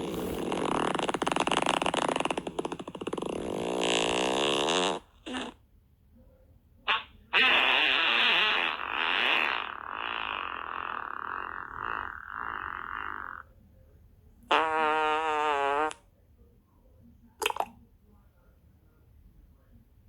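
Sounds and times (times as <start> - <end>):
long raspy fart-like noise: 0.0 - 5.6, 6.9 - 13.5, 14.5 - 16.0.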